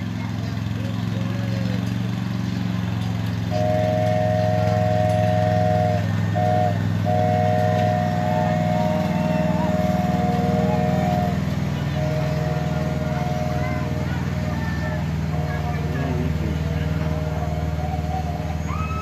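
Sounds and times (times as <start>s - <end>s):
lawn mower engine running: 0.0s - 19.0s
three-tone horn chord: 3.5s - 18.6s.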